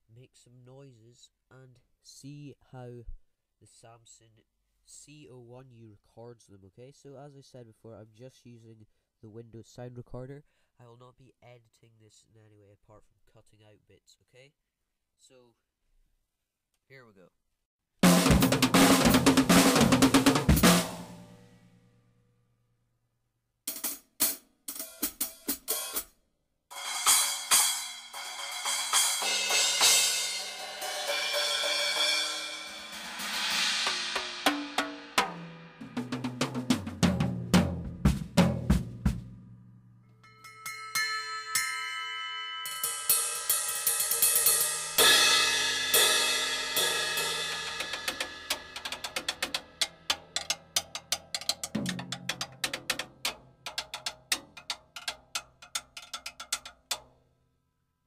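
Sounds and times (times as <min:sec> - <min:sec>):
low drum roll: 0:18.0 - 0:21.3, 0:26.8 - 0:39.7, 0:45.0 - 0:53.4
cymbal rolls: 0:26.7 - 0:35.8, 0:40.2 - 0:48.6
drum stick hits: 0:46.8 - 0:57.1.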